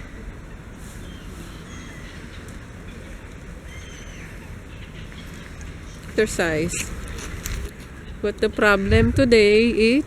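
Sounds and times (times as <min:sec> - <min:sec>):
outdoor hiss and low rumble: 0:00.0 - 0:10.0
bird chirps: 0:01.0 - 0:07.0.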